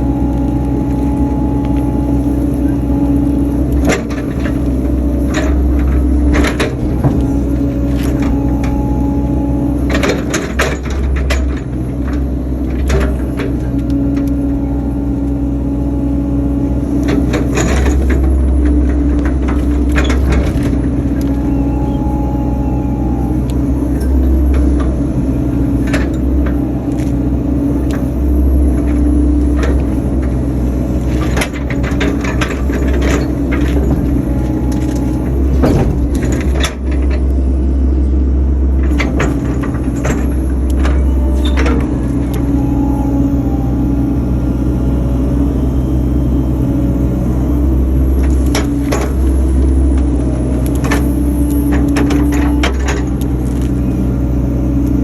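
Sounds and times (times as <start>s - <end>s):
excavator diesel engine running: 0.0s - 55.0s
sharp cracks and knocks of roots: 50.6s - 53.9s.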